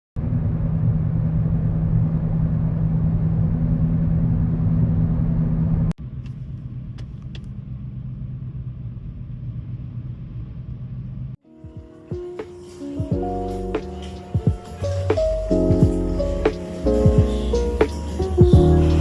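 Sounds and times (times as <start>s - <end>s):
vehicle rumble and drone: 0.2s - 11.4s.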